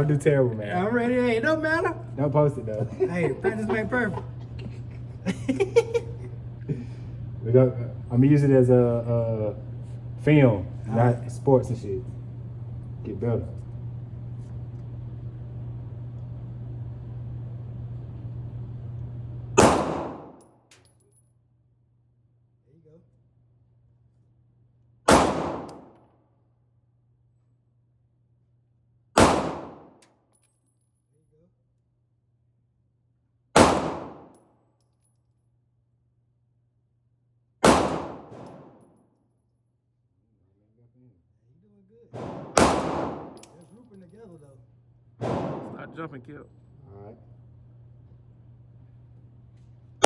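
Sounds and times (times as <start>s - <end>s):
steady low hum: 0.0s - 34.4s, 35.0s - 50.0s
handgun shot: 19.6s - 20.4s, 25.1s - 26.0s, 29.2s - 30.0s, 33.6s - 34.4s, 37.6s - 38.8s, 42.2s - 43.5s, 45.2s - 45.8s.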